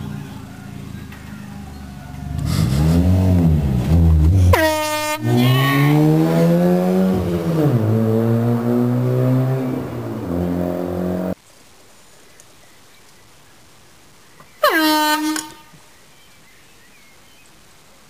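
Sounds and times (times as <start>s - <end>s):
loud droning: 2.1s - 11.4s
air horn blast: 4.5s - 6.1s, 14.6s - 15.7s.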